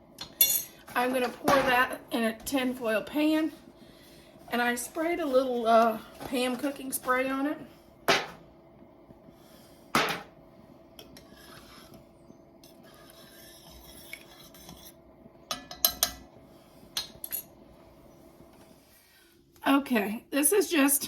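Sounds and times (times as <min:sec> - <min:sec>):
utensil scraping a pot: 0:00.4 - 0:08.4, 0:09.2 - 0:10.0, 0:10.9 - 0:17.5.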